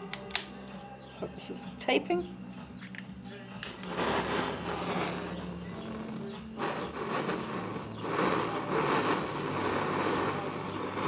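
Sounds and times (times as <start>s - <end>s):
fan running: 1.2s - 11.0s
gas torch rushing: 3.6s - 11.0s.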